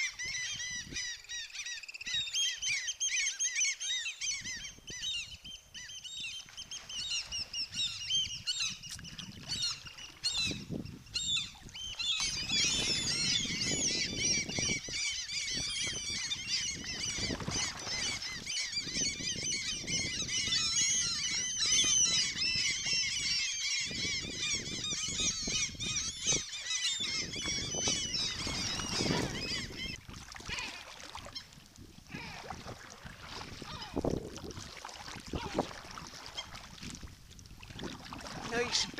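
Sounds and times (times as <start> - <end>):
low rumble of wind and water: 0.0 - 38.9
gulls squawking: 9.5 - 31.5, 32.1 - 32.6, 33.5 - 34.1, 35.3 - 35.7, 38.5 - 38.9.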